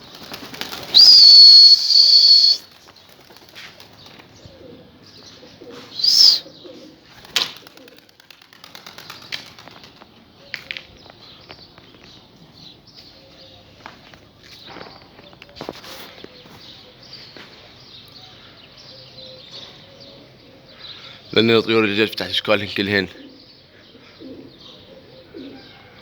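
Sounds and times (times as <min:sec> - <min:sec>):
pigeon wing flaps: 0:00.0 - 0:01.1, 0:02.6 - 0:04.3, 0:07.1 - 0:10.1
loud high whistle: 0:00.9 - 0:02.6, 0:06.0 - 0:06.4
rising and falling whistle: 0:00.9 - 0:02.6, 0:06.0 - 0:06.4.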